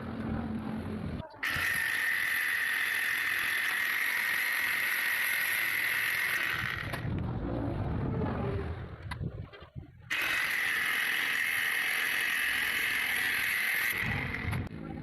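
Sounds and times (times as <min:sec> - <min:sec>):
power tool working metal: 0:01.4 - 0:07.2, 0:10.1 - 0:14.8
sharp clicks: 0:06.4 - 0:07.3.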